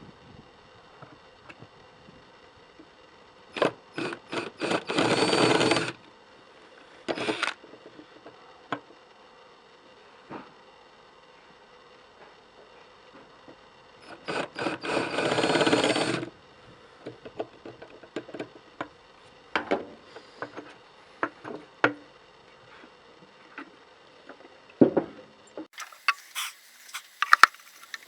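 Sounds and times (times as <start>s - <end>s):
power drill boring into wood: 3.6s - 6.0s, 7.1s - 7.6s, 14.1s - 16.3s
handling knocks and clicks: 25.8s - 28.0s.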